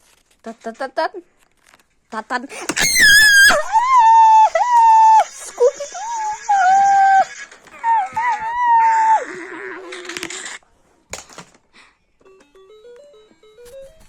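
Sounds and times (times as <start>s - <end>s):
high wavering cries: 2.7s - 10.4s.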